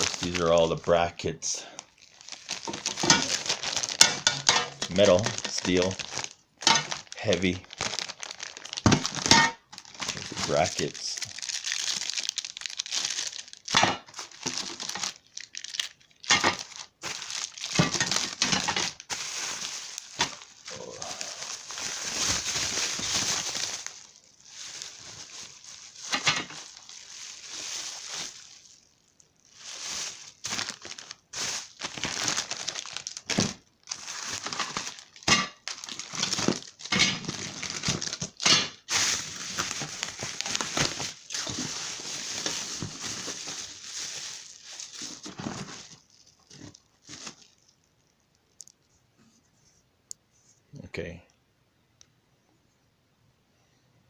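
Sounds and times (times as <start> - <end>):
plastic packaging crinkling: 0.0 - 48.9.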